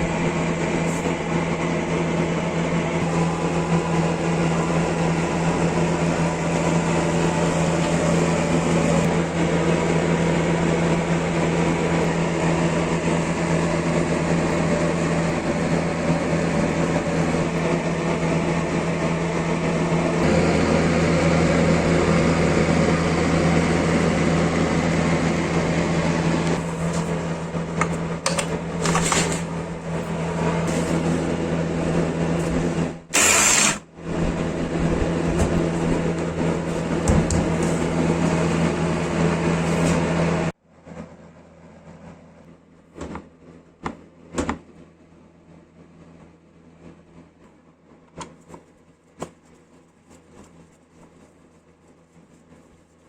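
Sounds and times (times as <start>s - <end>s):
electric power tool motor humming: 33.0s - 33.9s.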